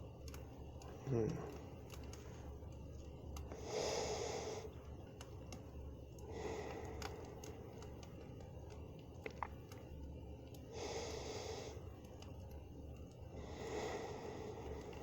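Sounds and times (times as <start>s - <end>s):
campfire crackling: 0.1s - 15.0s
slow breaths close to microphone: 3.5s - 4.8s, 10.7s - 11.9s, 13.3s - 15.0s.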